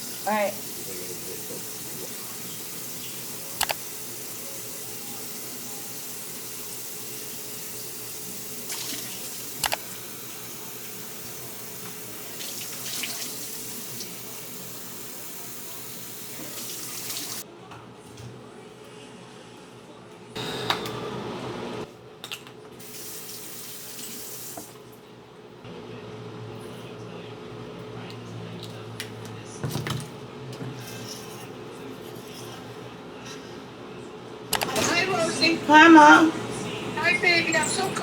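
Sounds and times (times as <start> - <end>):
water running from a tap: 0.0 - 17.4, 22.8 - 24.8
sharp clicks: 3.6 - 3.8.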